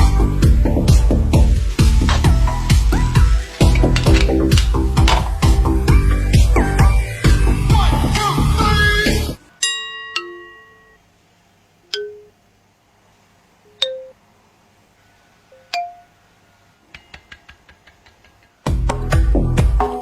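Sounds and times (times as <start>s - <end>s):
kitchenware clinking: 1.7s - 5.6s.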